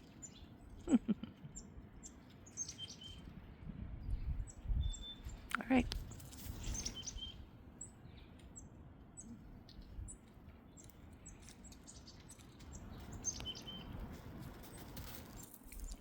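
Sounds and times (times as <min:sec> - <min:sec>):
small birds chirping: 0:00.0 - 0:16.0.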